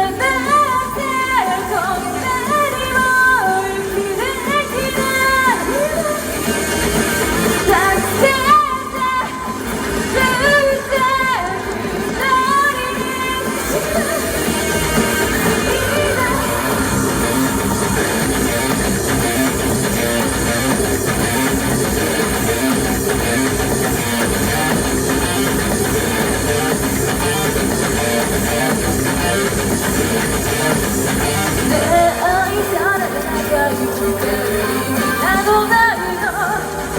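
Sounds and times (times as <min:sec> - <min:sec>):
person singing: 0:00.0 - 0:20.4, 0:31.3 - 0:36.9
rock band playing: 0:00.0 - 0:36.9.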